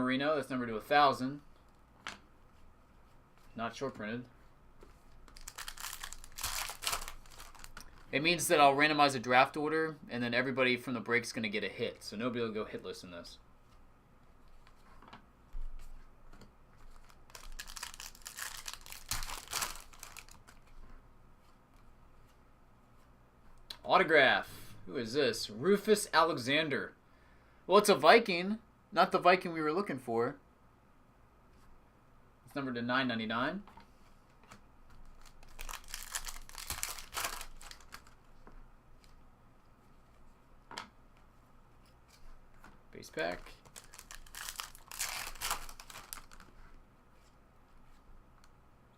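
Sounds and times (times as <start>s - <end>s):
card pack wrapper crinkling: 5.2s - 8.1s, 16.8s - 20.7s, 35.0s - 38.2s, 43.3s - 46.5s.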